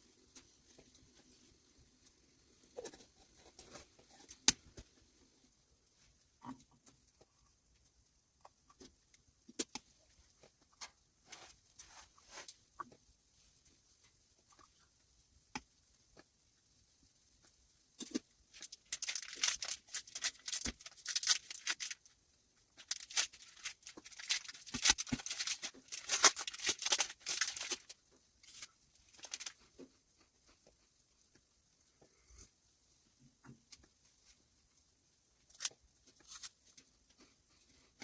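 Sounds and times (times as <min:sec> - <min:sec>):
crinkling tearing handling noise: 0:18.0 - 0:22.1, 0:22.8 - 0:29.7.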